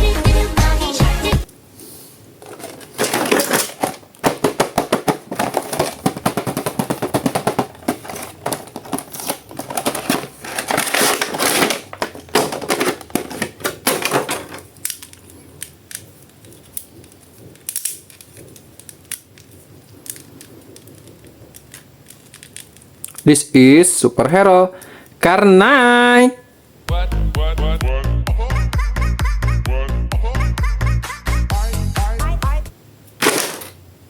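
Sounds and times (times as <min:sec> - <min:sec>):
plastic packaging crackling: 0:02.4 - 0:23.3.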